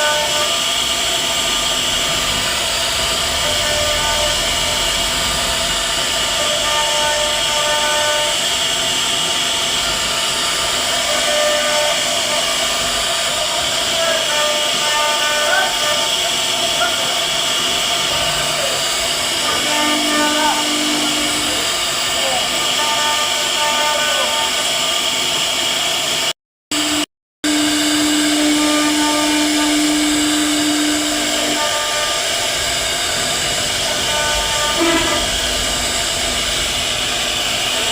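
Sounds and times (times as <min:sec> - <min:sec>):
router spindle cutting wood: 0:00.0 - 0:24.6, 0:26.8 - 0:37.9
steady low hum: 0:00.8 - 0:08.1.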